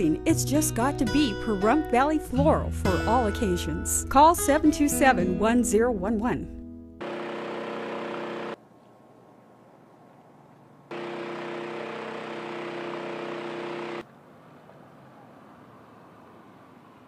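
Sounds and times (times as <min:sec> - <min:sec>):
machine hum with fixed pitch: 0:10.9 - 0:14.0.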